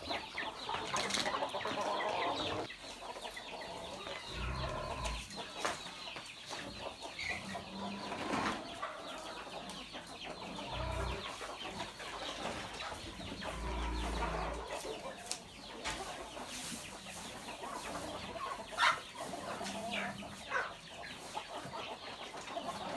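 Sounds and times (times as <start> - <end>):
chickens clucking: 0.0 - 22.9
chicken squawk: 17.7 - 20.8.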